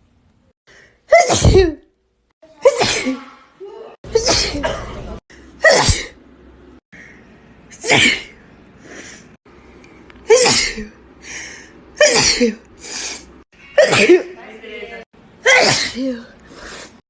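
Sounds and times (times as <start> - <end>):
girl sneezing: 1.1 - 1.8, 2.6 - 5.0, 5.6 - 6.2, 7.8 - 8.3, 10.3 - 10.9, 12.0 - 12.6, 13.8 - 14.3, 15.4 - 16.3.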